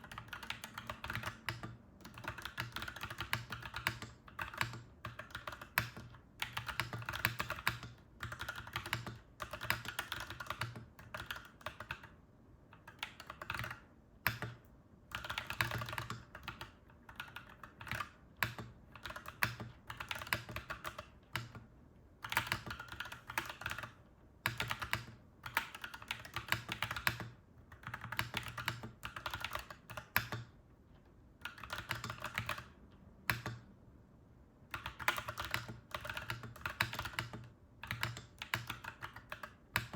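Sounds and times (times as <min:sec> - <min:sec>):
mechanical keyboard typing: 0:00.0 - 0:30.6, 0:31.4 - 0:33.7, 0:34.7 - 0:39.9.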